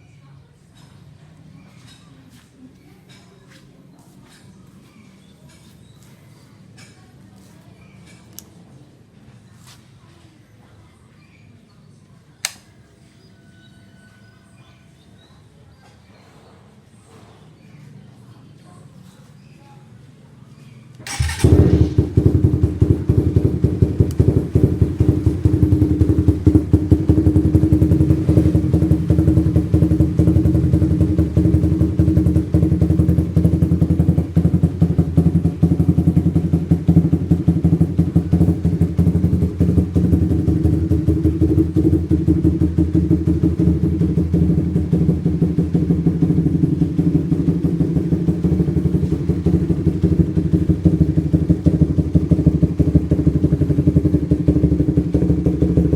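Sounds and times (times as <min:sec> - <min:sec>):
motorcycle engine idling: 0:21.0 - 0:55.9.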